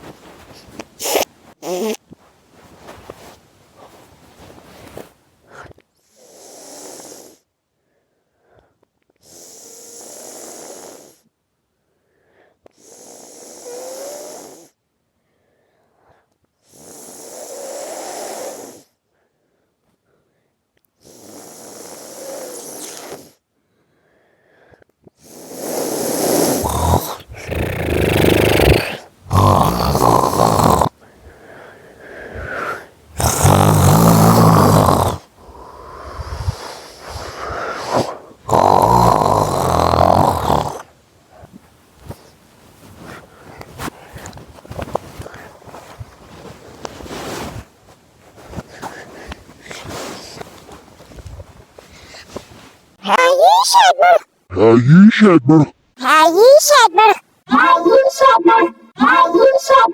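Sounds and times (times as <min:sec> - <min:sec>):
slow noisy breaths: 0:02.6 - 0:47.7
loud rasping snores: 0:05.6 - 0:07.4, 0:09.2 - 0:11.2, 0:12.8 - 0:14.7, 0:16.7 - 0:18.9, 0:21.0 - 0:23.3, 0:25.2 - 0:31.0, 0:32.0 - 0:40.9.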